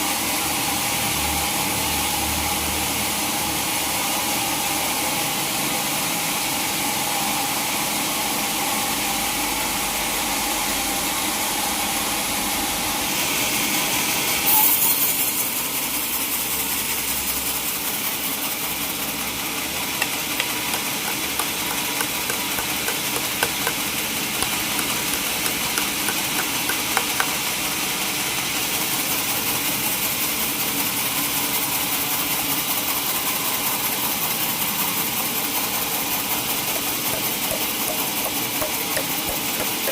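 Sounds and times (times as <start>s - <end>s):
scattered ticks: 20.0s - 23.8s, 36.8s - 39.9s
sawmill saw hissing: 20.0s - 27.4s.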